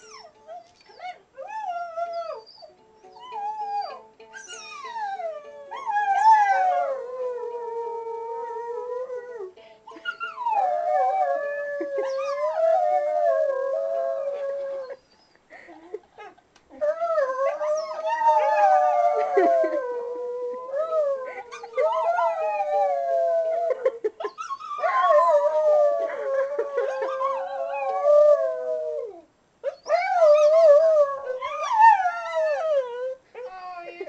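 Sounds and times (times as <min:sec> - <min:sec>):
dog howling: 0:24.6 - 0:33.2.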